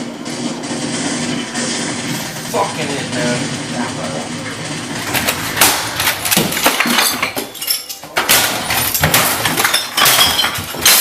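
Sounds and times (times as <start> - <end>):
crashes and clattering impacts: 0.0 - 11.0.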